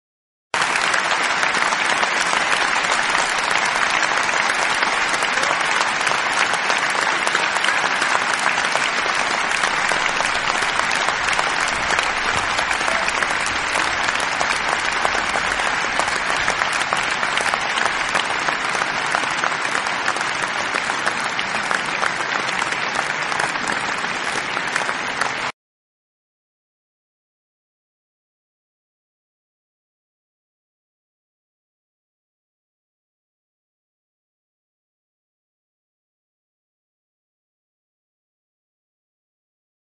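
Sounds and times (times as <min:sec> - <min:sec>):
crowd applause: 0:00.6 - 0:25.6.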